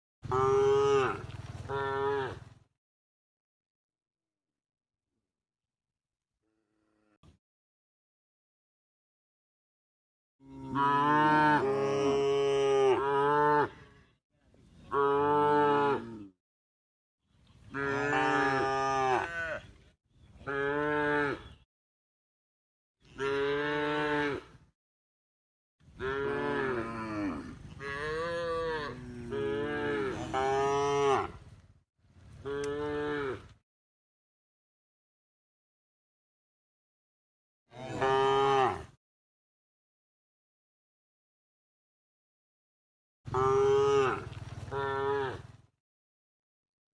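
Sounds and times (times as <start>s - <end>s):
cows mooing: 0.3s - 2.5s, 10.4s - 14.1s, 14.9s - 16.3s, 17.7s - 19.7s, 20.5s - 21.6s, 23.1s - 24.6s, 26.0s - 31.4s, 32.4s - 33.6s, 37.8s - 38.9s, 43.3s - 45.6s.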